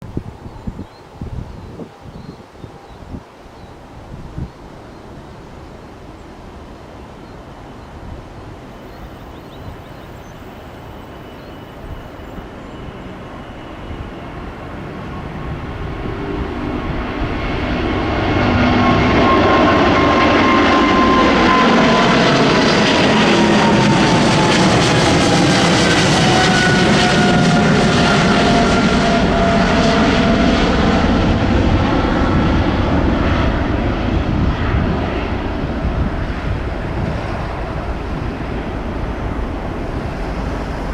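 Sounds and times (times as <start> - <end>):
jet engines roaring: 8.3 - 40.9.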